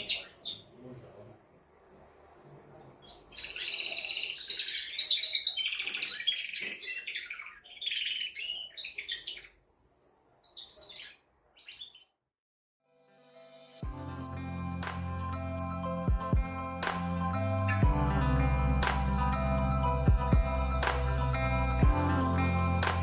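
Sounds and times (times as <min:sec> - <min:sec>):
canary singing trills: 0:00.0 - 0:00.8, 0:02.8 - 0:09.6, 0:10.4 - 0:12.2.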